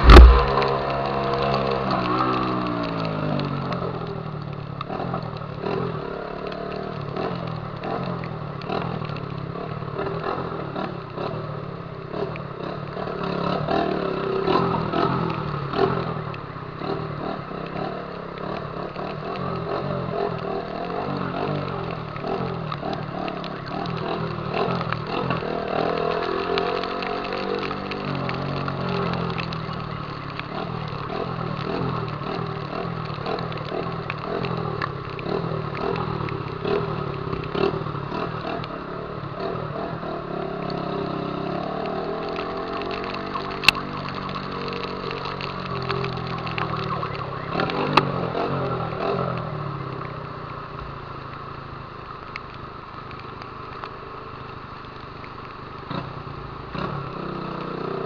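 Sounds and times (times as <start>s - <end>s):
motorcycle engine running: 0.0s - 1.3s
steady rushing noise: 0.0s - 1.4s.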